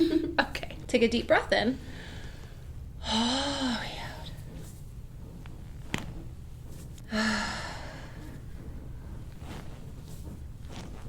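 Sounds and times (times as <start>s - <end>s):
hands rustling on clothing: 4.3s - 7.1s, 7.8s - 11.0s.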